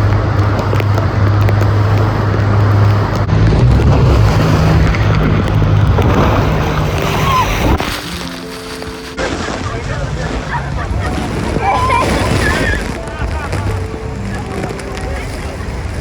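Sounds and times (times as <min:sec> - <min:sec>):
boat engine running: 0:00.0 - 0:16.0
rushing wind: 0:00.0 - 0:16.0
water noise: 0:00.0 - 0:16.0.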